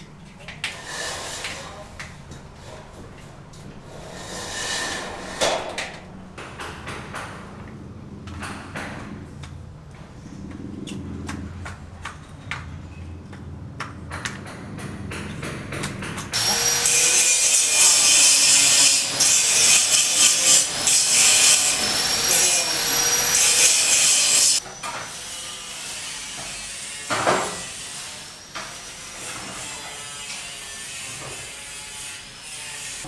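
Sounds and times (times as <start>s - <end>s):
power saw cutting: 0.6s - 6.6s, 16.3s - 33.0s.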